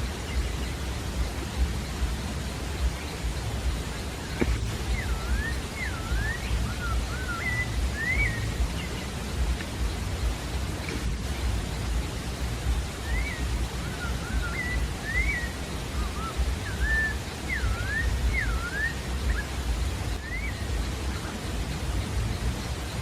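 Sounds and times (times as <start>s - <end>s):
low background rumble: 0.0s - 23.0s
thrush singing whistled phrases: 2.8s - 10.3s, 12.7s - 23.0s.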